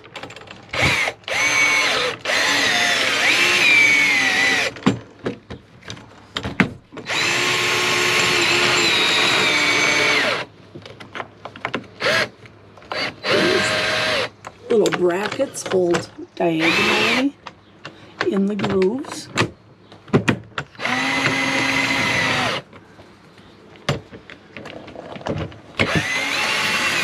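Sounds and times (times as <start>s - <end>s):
power drill whining: 0.7s - 4.8s, 7.0s - 10.5s, 12.0s - 12.3s, 12.9s - 14.3s, 16.6s - 17.2s, 20.8s - 22.6s, 25.8s - 27.0s.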